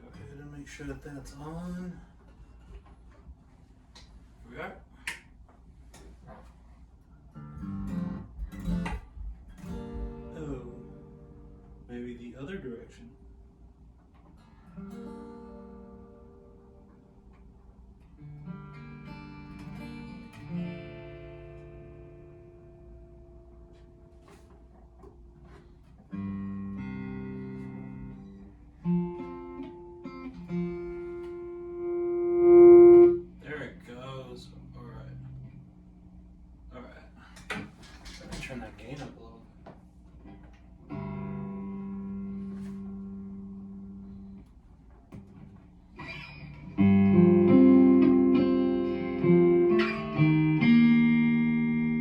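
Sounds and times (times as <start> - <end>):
acoustic guitar chords strummed: 7.4 - 11.8, 18.3 - 34.2, 46.0 - 52.0
acoustic guitar chord strummed: 26.1 - 33.3, 46.2 - 52.0
guitar single notes plucked: 26.1 - 33.3, 40.8 - 44.2, 45.2 - 52.0.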